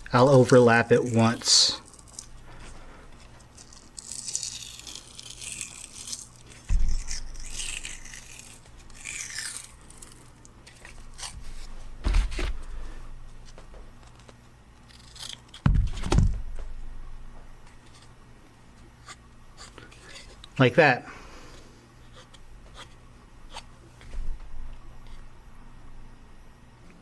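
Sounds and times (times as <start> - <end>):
cloth tape peeling and rubbing: 0.0 - 12.7, 13.3 - 16.7.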